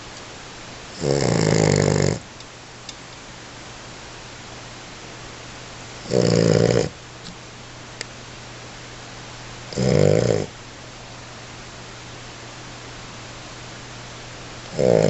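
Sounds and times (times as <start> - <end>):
puppy snoring: 0.9 - 2.3, 6.0 - 7.0, 9.7 - 10.6, 14.7 - 15.0.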